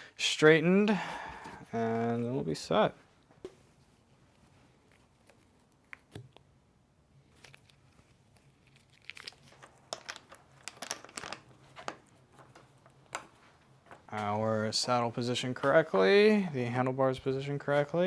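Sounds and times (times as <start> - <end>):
crinkling rustles: 7.2 - 14.6.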